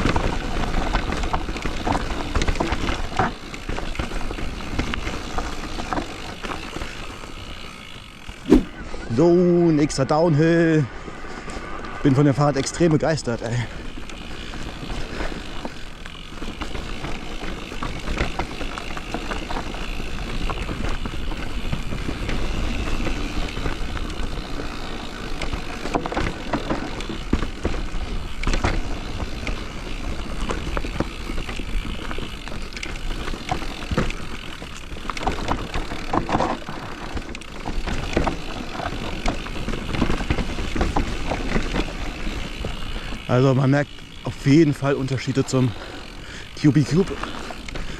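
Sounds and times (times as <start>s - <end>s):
tyres rolling on dirt: 0.0s - 47.9s
bike knocking over bumps: 15.6s - 43.3s.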